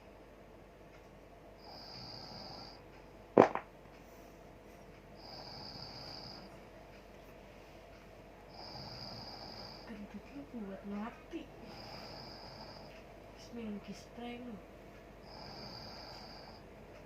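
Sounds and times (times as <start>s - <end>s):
man snoring: 1.6s - 2.8s, 5.2s - 6.5s, 8.5s - 9.9s, 11.6s - 12.9s, 15.2s - 16.6s.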